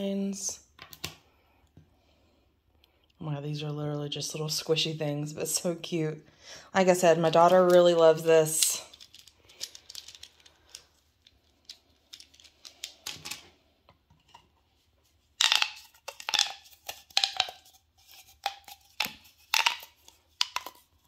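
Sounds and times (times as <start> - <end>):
plastic toys clicking: 8.9 - 13.4.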